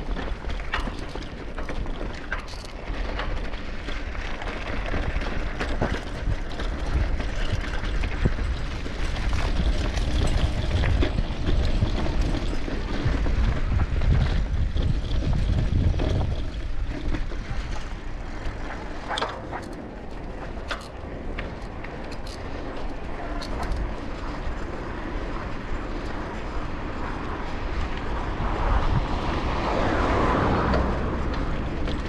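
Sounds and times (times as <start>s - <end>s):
bicycle clicks and rattles: 0.0s - 32.0s
wind rumbling on microphone: 0.0s - 32.0s.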